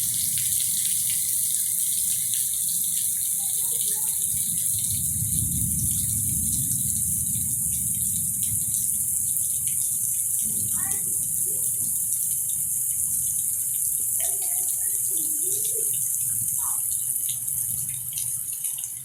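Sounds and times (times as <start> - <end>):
rain falling: 0.0 - 19.0.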